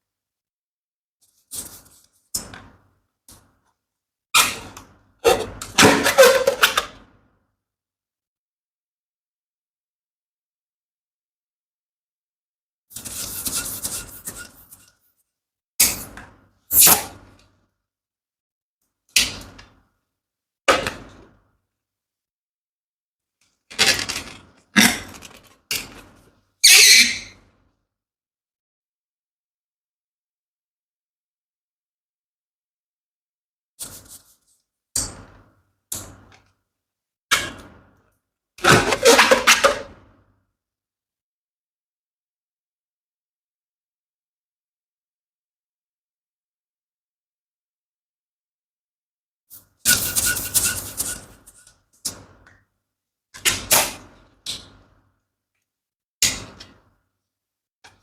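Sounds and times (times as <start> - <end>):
balloon rubbing and squeaking: 26.6 - 27.3, 49.9 - 51.3.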